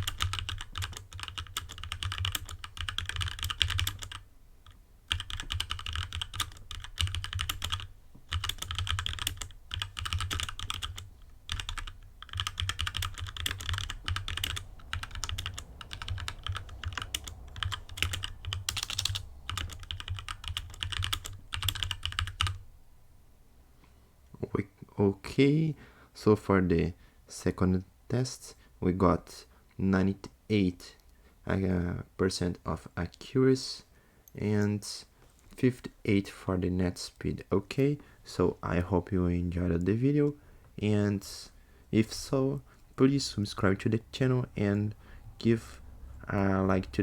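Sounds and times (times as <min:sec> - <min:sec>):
fast typing on mechanical keyboard: 0:00.0 - 0:04.2, 0:05.1 - 0:22.6.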